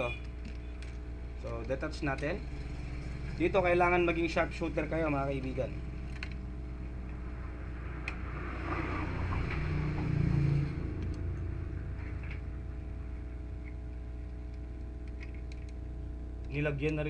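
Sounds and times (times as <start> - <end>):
steady low hum: 0.0 - 17.0
low rumble: 3.1 - 14.4.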